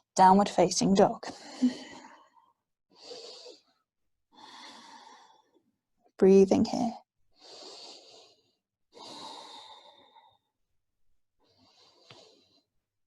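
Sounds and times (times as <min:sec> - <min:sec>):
woman breathing deeply: 0:01.3 - 0:05.6, 0:07.4 - 0:10.6, 0:11.4 - 0:12.7.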